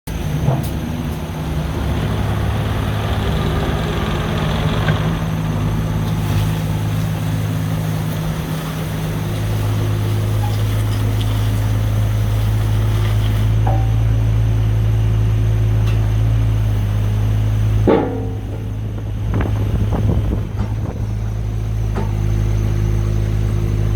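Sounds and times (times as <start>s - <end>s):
diesel engine running: 0.0s - 23.9s.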